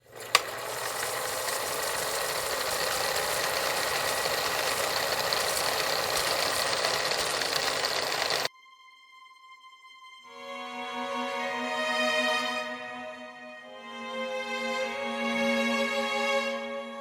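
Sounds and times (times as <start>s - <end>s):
machine hissing: 0.0s - 8.5s.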